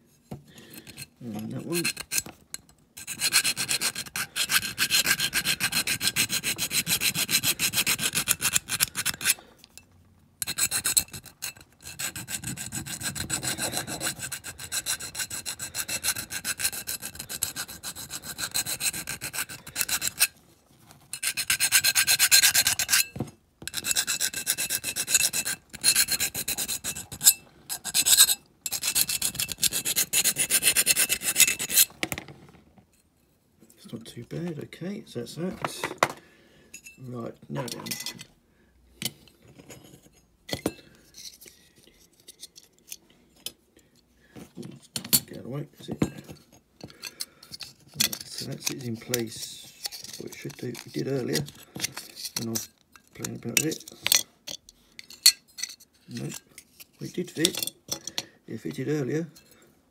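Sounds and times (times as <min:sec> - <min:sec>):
hand file rasping on metal: 0:00.8 - 0:02.3, 0:03.0 - 0:09.4, 0:10.4 - 0:20.4, 0:21.1 - 0:31.9, 0:48.0 - 0:53.8.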